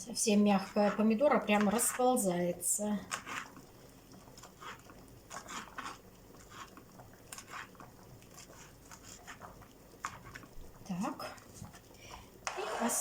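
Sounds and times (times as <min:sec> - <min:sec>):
knife dicing tomato: 0:00.6 - 0:02.2, 0:03.0 - 0:03.6, 0:04.4 - 0:11.5.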